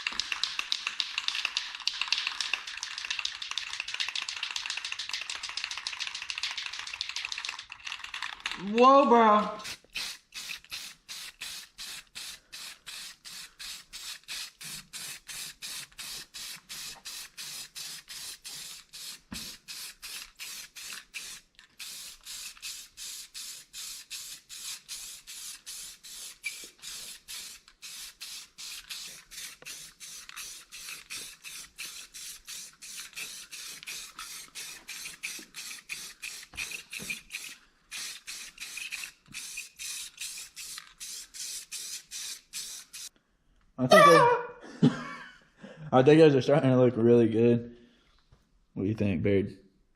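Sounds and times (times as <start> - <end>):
aerosol can spraying: 0.0 - 7.6, 9.5 - 43.1.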